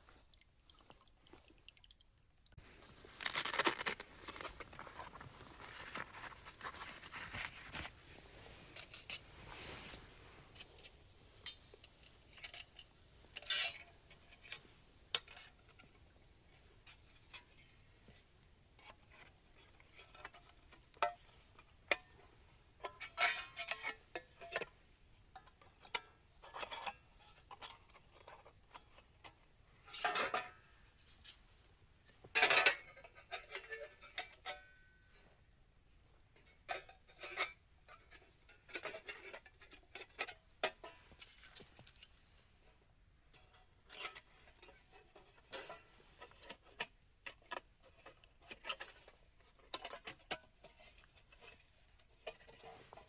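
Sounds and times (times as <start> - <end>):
cookware clinking and scraping: 32.4 - 35.0.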